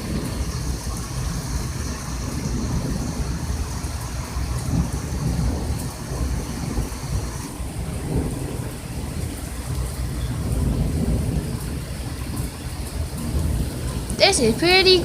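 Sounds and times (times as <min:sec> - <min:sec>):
heavy rain falling: 0:00.0 - 0:15.0
rumble of thunder: 0:00.0 - 0:15.0.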